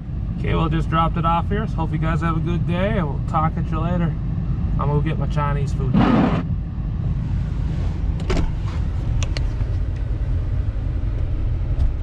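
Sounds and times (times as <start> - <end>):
car engine and road noise: 0.0 - 12.0
rush of noise: 5.8 - 8.1.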